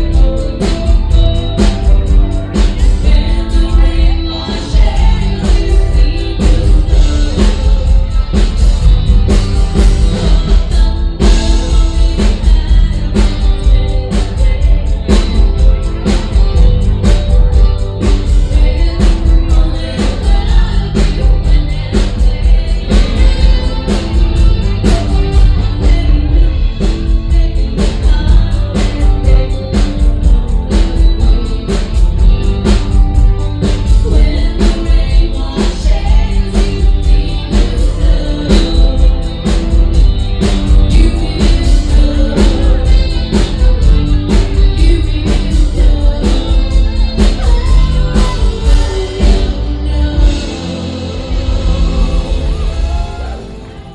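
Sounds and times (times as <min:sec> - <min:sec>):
band playing: 0:00.0 - 0:53.9
heavy bass: 0:00.0 - 0:53.9
steady drum beat: 0:00.0 - 0:53.9
woman singing: 0:00.0 - 0:53.9.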